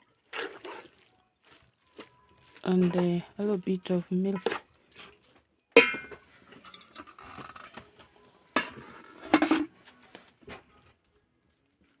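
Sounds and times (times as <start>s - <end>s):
kitchen utensils and pots clinking: 4.2s - 9.8s.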